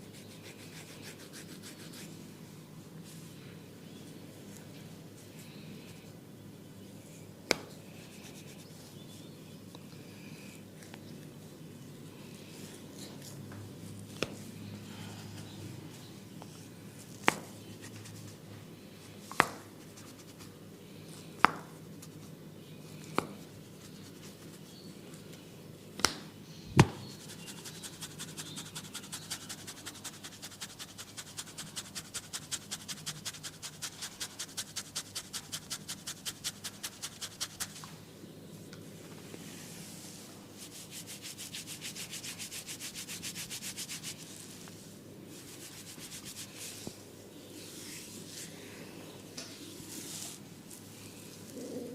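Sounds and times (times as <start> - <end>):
hands rubbing scalp: 0.1 - 2.2, 27.0 - 37.9, 40.0 - 47.0.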